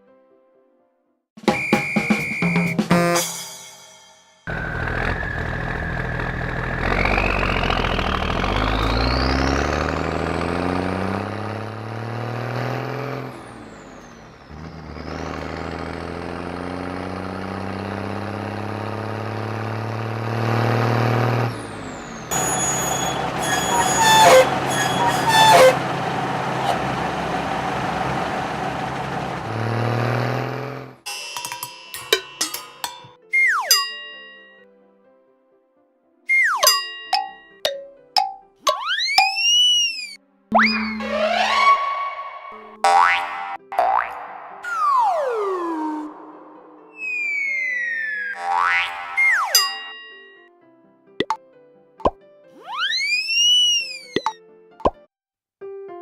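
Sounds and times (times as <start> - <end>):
cartoon truck engine revving: 4.5 - 31.0, 38.7 - 49.6
metallic clanging and clatter: 31.1 - 33.2.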